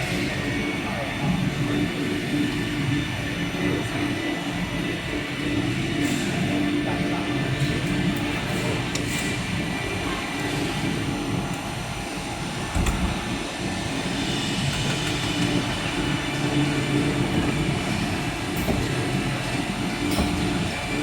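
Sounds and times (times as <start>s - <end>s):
lathe whirring: 8.9s - 21.0s.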